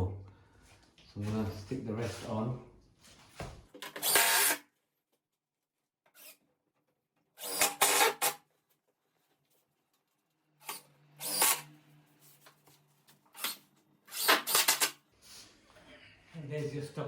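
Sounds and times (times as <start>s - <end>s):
drill-driver whirring: 3.8s - 4.6s, 7.4s - 8.4s, 10.6s - 11.7s, 13.4s - 15.0s.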